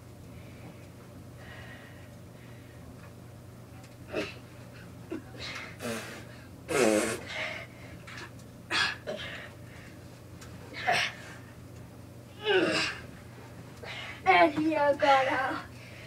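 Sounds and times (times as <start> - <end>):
person grunting with effort: 12.4 - 13.0.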